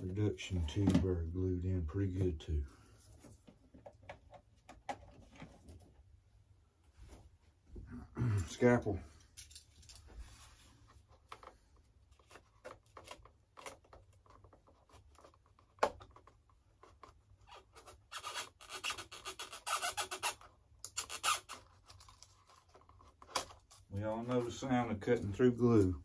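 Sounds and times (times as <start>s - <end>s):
scalpel scraping hardened glue: 17.4s - 21.9s.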